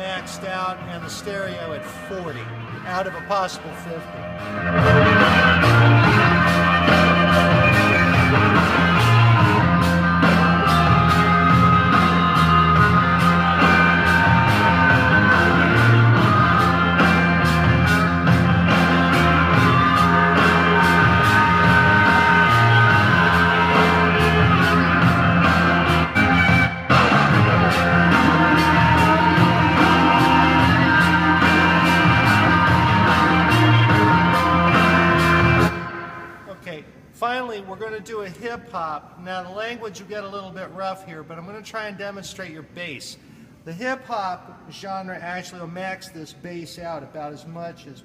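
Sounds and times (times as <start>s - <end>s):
rock song through boat stereo: 0.0s - 36.3s.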